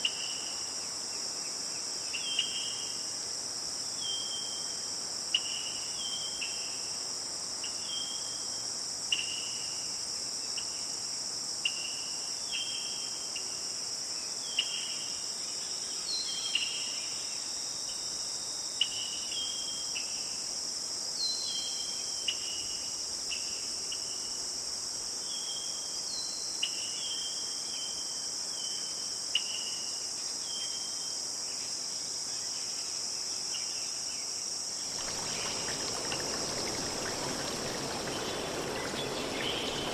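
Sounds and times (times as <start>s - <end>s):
insects chorus: 0.0s - 39.9s
bird chirping: 34.9s - 39.9s.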